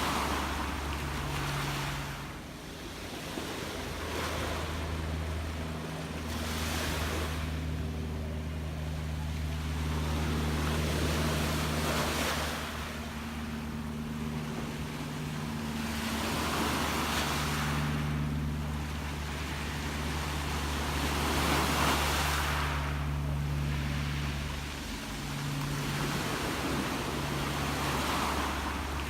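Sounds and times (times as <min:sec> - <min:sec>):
low hum: 0:00.0 - 0:29.0
sea waves washing in: 0:00.0 - 0:29.0.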